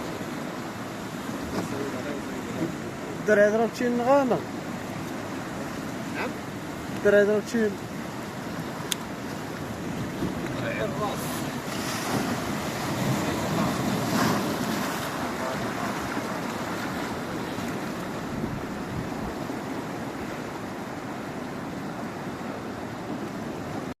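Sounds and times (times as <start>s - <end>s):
waves: 0.0s - 24.0s
wind buffeting microphone: 8.0s - 20.9s.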